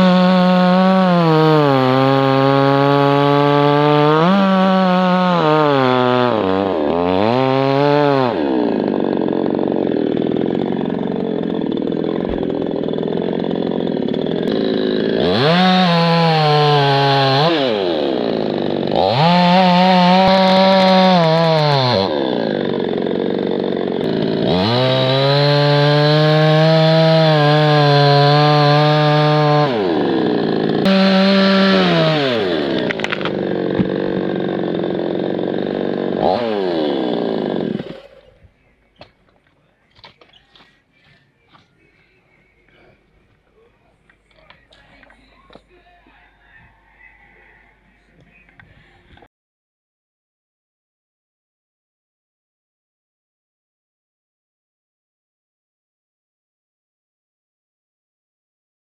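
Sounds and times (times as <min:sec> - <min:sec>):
chainsaw cutting wood: 0:00.0 - 0:41.7, 0:42.7 - 0:47.8.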